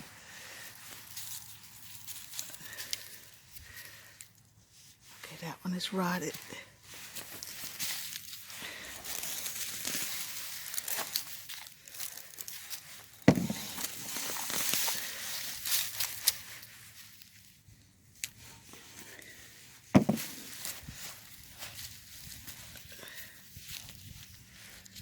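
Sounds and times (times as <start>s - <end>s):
hands digging through soil: 6.8s - 17.6s, 18.2s - 25.0s
sharp knocks: 13.3s - 13.9s, 20.0s - 20.4s.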